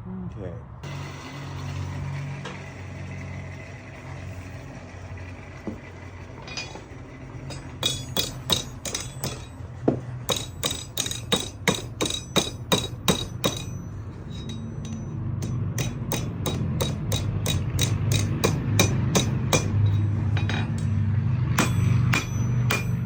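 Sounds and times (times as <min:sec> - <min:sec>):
hammer ringing on anvil: 0:07.4 - 0:23.0.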